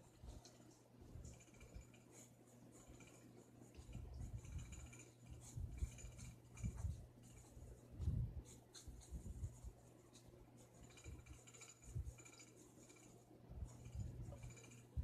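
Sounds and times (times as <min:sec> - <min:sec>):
drawing strokes scratching on paper: 0:00.0 - 0:15.0
faint low hum: 0:00.0 - 0:15.0.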